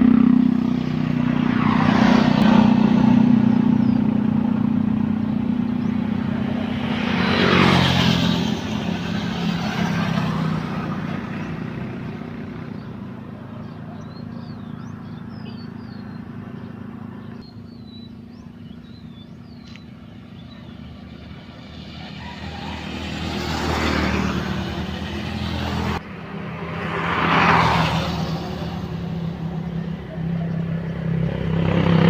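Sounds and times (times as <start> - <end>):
low engine hum: 0.0 - 32.0
vehicles passing by: 0.0 - 32.0
small birds chirping: 2.4 - 6.7, 11.1 - 23.5.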